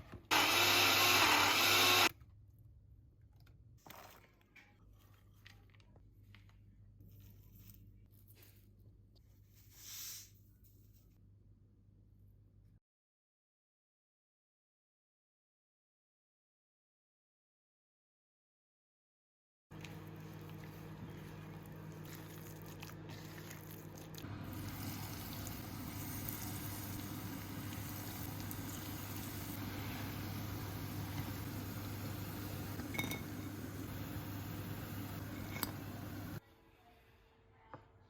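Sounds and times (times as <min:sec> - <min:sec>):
fritters sizzling in hot oil: 0:24.4 - 0:36.4.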